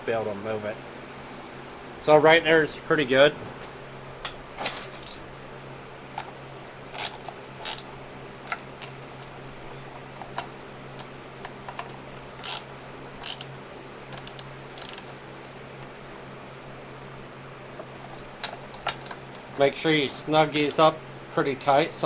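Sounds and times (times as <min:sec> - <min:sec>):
steady low hum: 0:00.0 - 0:22.0
wrench clicking on metal nuts: 0:14.1 - 0:15.1, 0:20.5 - 0:20.8.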